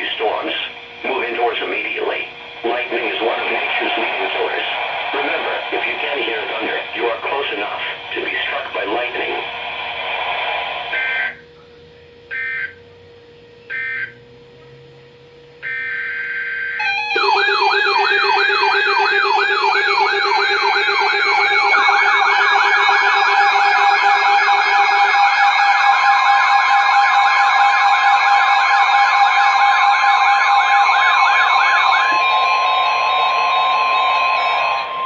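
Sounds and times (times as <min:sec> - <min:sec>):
screeching data tone bursts: 0:15.6 - 0:35.0
sirens wailing: 0:15.6 - 0:35.0
steady tone: 0:16.7 - 0:35.0.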